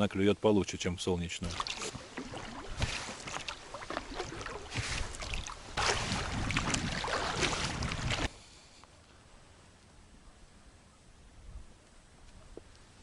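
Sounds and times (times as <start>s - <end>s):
water splashing around a boat: 1.2s - 8.4s.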